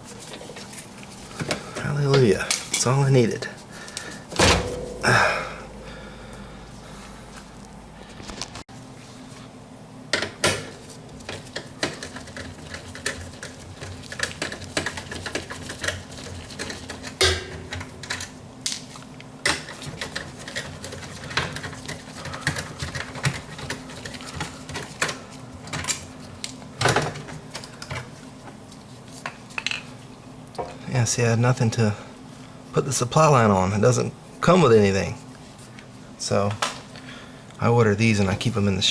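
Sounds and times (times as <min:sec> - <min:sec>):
faint steady hum: 0:00.0 - 0:11.7.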